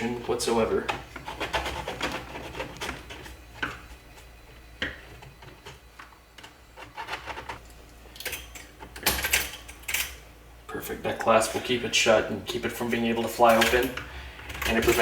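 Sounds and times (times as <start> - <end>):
plastic parts clicking and rubbing: 4.8 - 7.6.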